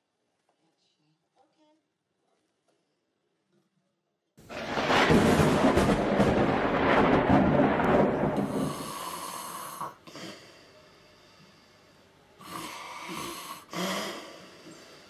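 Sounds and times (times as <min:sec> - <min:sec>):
man snoring: 0:08.4 - 0:10.4, 0:12.4 - 0:15.0.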